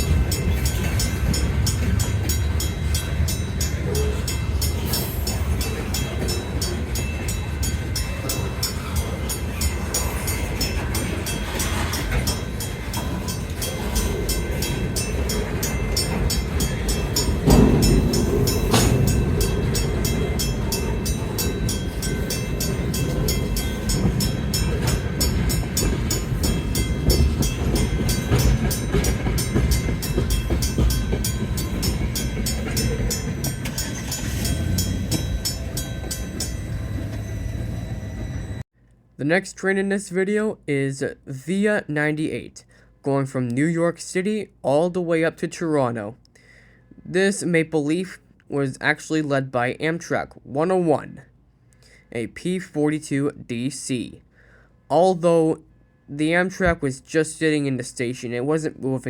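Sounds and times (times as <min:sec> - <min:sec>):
rapid clicking of wheels: 0:00.0 - 0:38.6
train rumbling on rails: 0:00.0 - 0:38.7.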